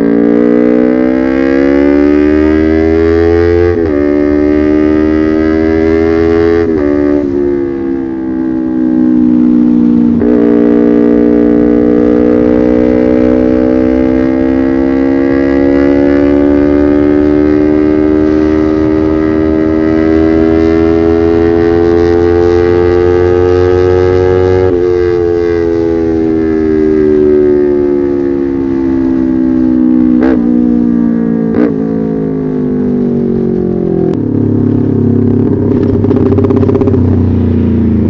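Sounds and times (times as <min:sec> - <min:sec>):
motorcycle engine revving: 0:00.0 - 0:38.0.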